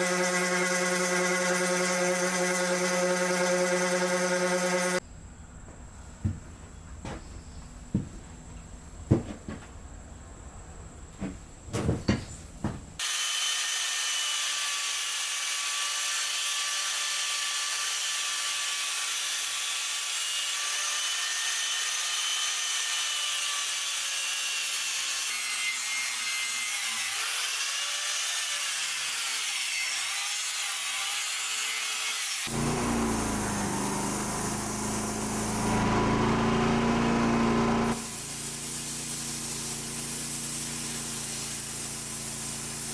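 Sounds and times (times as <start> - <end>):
saw cutting through wood: 0.0 - 5.0, 13.0 - 42.9
knocks: 9.1 - 9.7.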